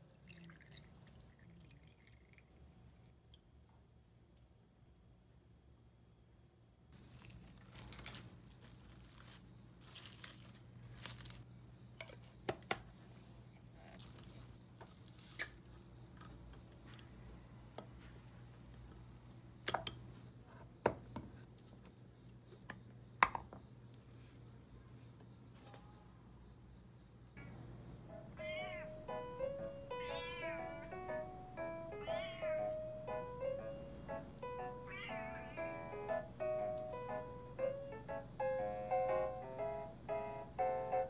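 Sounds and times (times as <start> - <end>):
faint high whine: 4.9 - 41.0
food rustling and scraping: 7.0 - 12.4, 13.6 - 15.8.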